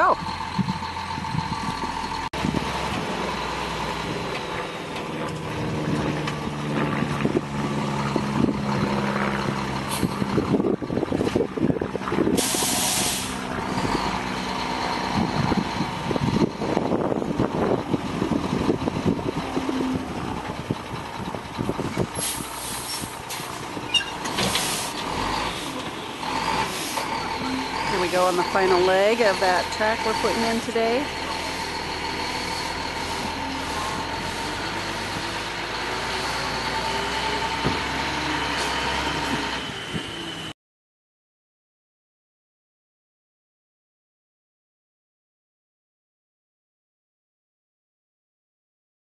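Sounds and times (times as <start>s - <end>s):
truck diesel engine running: 0.0s - 40.4s
air brake hisses: 12.4s - 13.4s, 22.2s - 23.5s, 24.4s - 25.0s.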